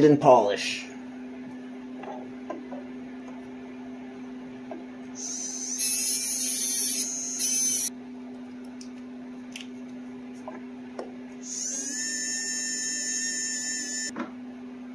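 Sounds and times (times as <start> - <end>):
rotary tool whine: 5.2 - 7.9, 11.4 - 14.1.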